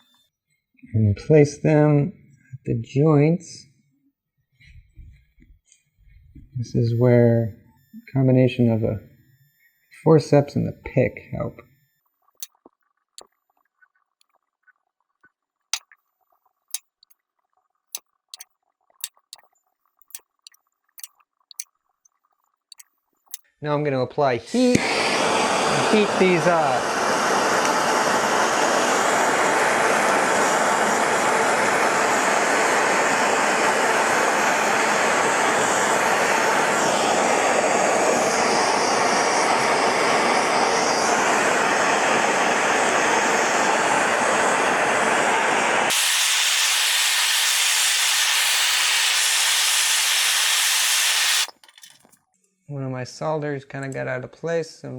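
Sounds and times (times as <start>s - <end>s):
metal tools tapping metal: 22.7s - 23.4s, 51.5s - 52.2s
gas torch hissing: 24.5s - 51.9s.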